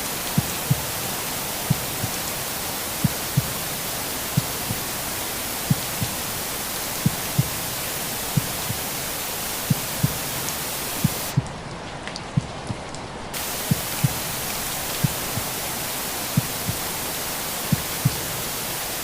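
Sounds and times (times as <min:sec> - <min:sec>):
rain-like white noise hiss: 0:00.0 - 0:19.0
heartbeat thumps: 0:00.2 - 0:02.3, 0:03.0 - 0:09.0, 0:09.6 - 0:11.6, 0:13.4 - 0:15.6, 0:16.3 - 0:16.9, 0:17.6 - 0:18.4.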